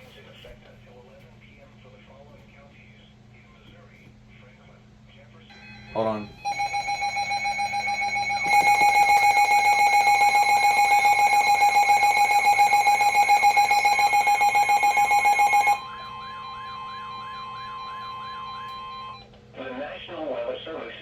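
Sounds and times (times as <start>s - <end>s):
rapidly pulsing alarm tone: 5.5s - 19.3s.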